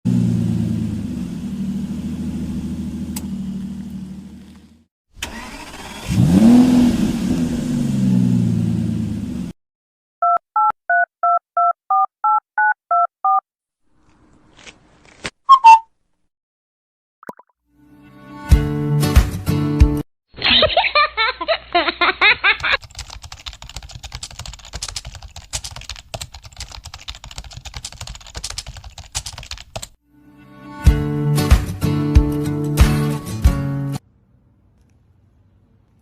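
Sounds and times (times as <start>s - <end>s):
toy car engine revving: 5.2s - 6.6s.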